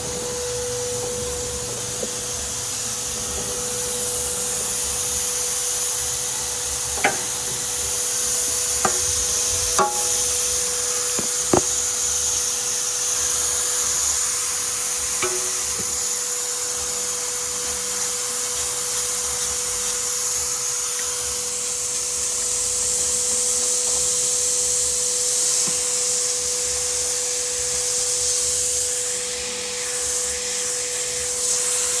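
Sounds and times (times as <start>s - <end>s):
constant mid-pitched tone: 0.0s - 16.6s
faint high whine: 0.0s - 17.3s
air hissing through a leak: 0.0s - 32.0s.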